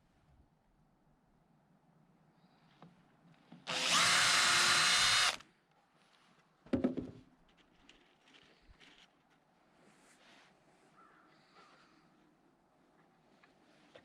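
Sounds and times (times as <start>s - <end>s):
power drill running: 3.7s - 5.4s.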